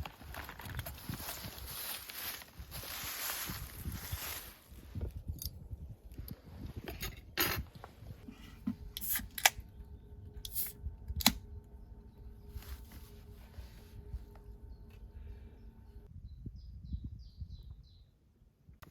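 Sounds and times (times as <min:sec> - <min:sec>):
faint steady hum: 0:04.7 - 0:16.1.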